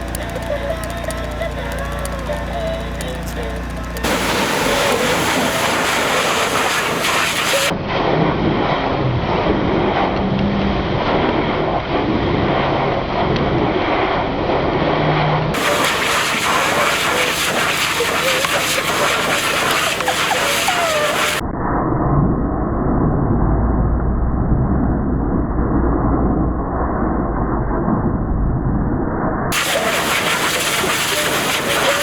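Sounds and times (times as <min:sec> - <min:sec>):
pressure washer spraying: 0:00.0 - 0:07.7, 0:15.6 - 0:21.4, 0:29.5 - 0:32.0.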